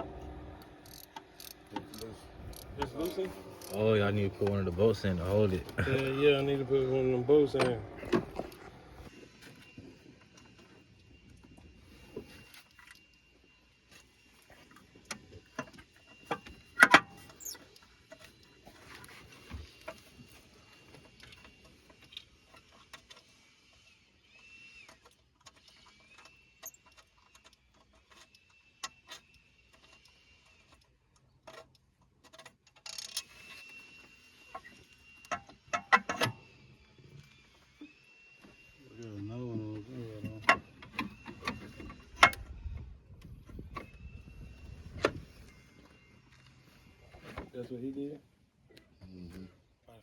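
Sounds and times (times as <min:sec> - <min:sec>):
hand tools clicking on metal: 0:00.6 - 0:03.8.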